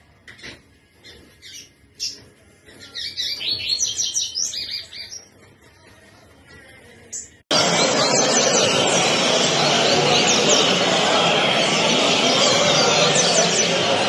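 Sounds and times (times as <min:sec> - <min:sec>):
loud steady rush of noise: 0:07.5 - 0:14.0.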